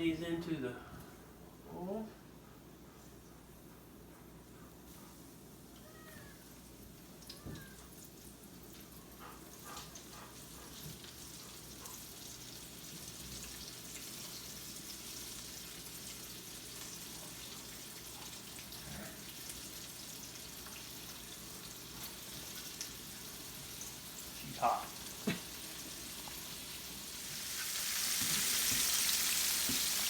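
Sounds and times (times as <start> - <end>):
food sizzling in hot oil: 11.9 - 30.0.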